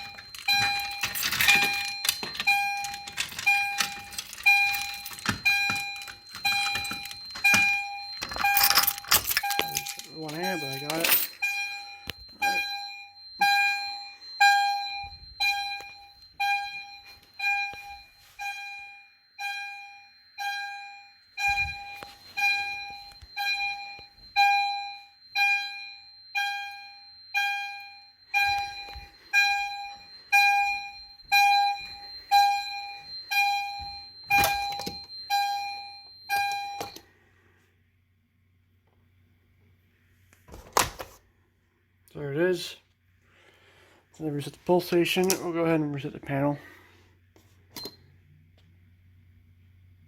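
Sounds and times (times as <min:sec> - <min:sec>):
fire alarm bell-like chime: 0:00.0 - 0:37.5, 0:42.2 - 0:47.1, 0:47.7 - 0:48.3
steady high-pitched alarm tone: 0:00.0 - 0:37.6.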